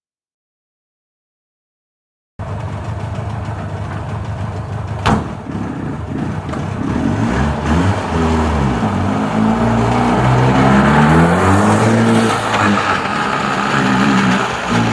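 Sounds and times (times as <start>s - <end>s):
vehicle engine revving: 2.4s - 14.9s
sharp knock: 5.0s - 5.7s.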